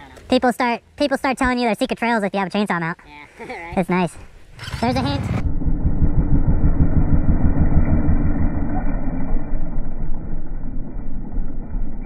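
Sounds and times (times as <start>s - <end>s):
wind noise: 4.2s - 12.0s
dirt bike engine rumble: 4.4s - 12.0s.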